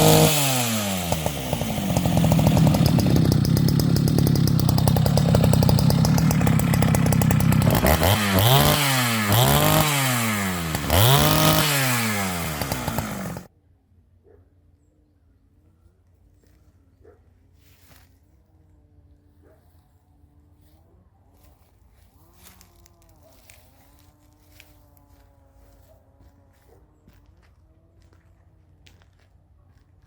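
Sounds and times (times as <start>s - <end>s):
chainsaw revving: 0.0s - 13.5s, 22.0s - 25.8s.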